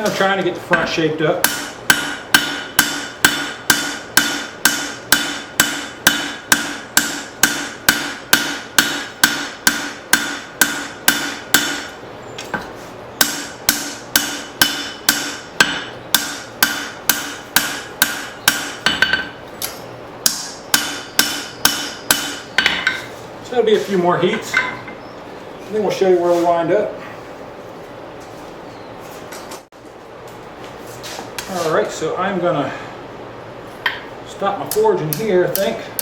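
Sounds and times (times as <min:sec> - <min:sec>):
hammer striking steel on anvil: 0:00.0 - 0:19.4, 0:20.2 - 0:23.1.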